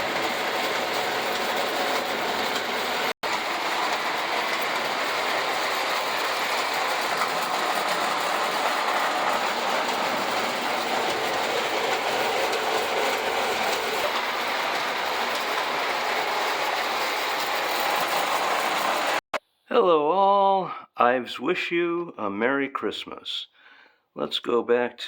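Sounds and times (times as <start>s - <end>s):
toy train clattering on track: 0.0s - 19.2s.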